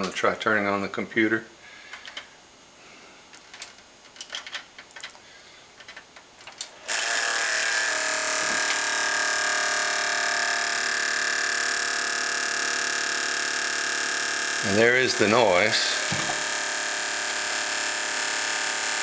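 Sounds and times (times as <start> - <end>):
computer fans whining: 11.3 - 17.0.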